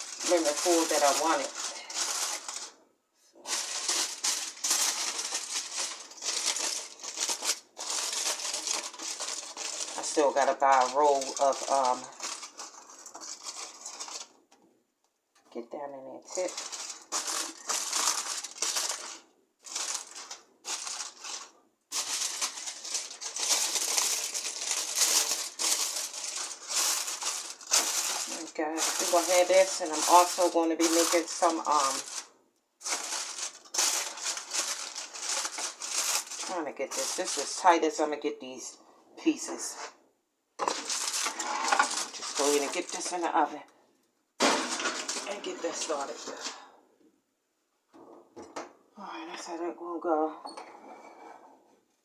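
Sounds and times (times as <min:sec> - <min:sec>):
aluminum foil crinkling: 0:00.0 - 0:02.8, 0:03.4 - 0:14.6, 0:16.2 - 0:38.0, 0:40.6 - 0:43.6, 0:44.4 - 0:46.7.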